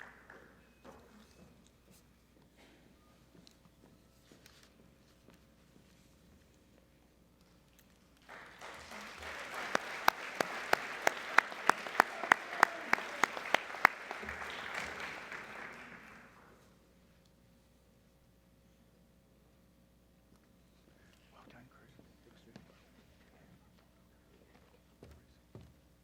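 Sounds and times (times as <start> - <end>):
nearby hands clapping loudly: 8.2 - 16.4
audience applause: 8.2 - 16.5.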